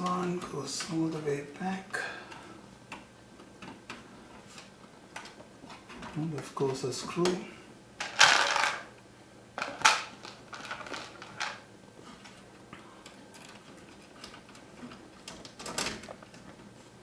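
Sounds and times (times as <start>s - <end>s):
small parts clicking and clattering: 8.0s - 8.9s, 9.6s - 11.6s.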